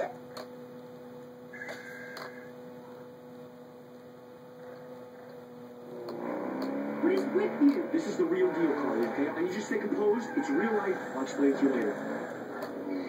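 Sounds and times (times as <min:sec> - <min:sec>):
low electrical hum: 0:00.0 - 0:06.2.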